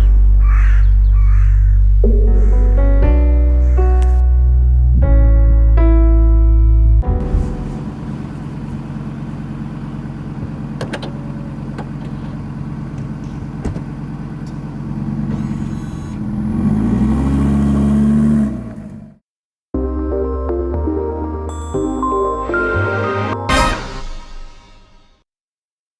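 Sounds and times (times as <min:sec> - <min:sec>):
car engine revving: 0:07.0 - 0:19.2.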